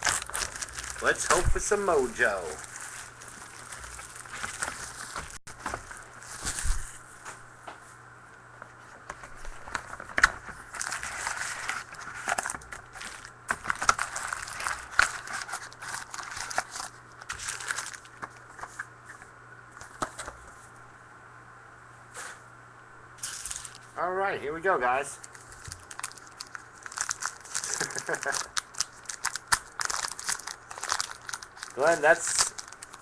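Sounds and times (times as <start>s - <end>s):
plastic wrapping tearing and crinkling: 0.0s - 7.0s, 9.2s - 18.8s, 23.2s - 23.9s, 25.2s - 33.0s.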